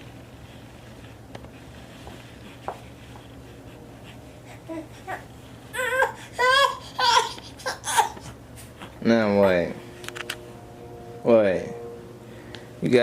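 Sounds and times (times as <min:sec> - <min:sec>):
low room hum: 0:00.0 - 0:13.0
baby crying: 0:04.5 - 0:08.3.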